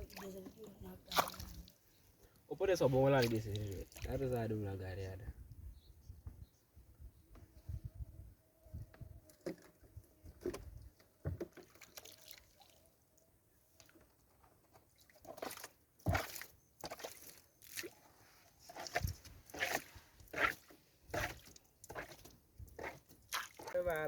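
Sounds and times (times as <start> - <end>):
water splashing and sloshing: 0.0 - 4.5, 9.3 - 24.0.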